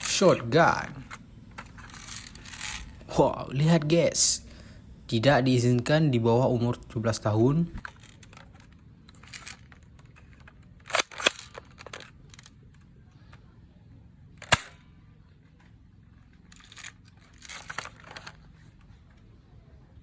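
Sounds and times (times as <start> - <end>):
toy gun plastic clicks: 1.0 - 2.9, 7.8 - 12.8, 14.4 - 14.9, 16.4 - 18.7.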